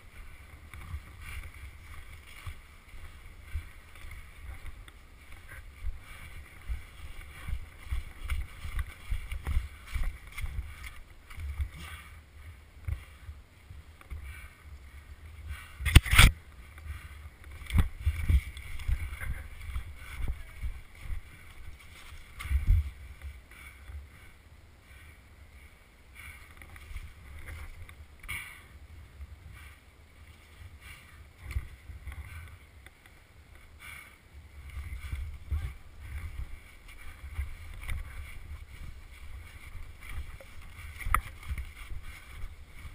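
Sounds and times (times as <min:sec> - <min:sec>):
muffled camera thumps and rustling: 0:00.0 - 0:12.1, 0:15.4 - 0:24.0, 0:34.6 - 0:42.9.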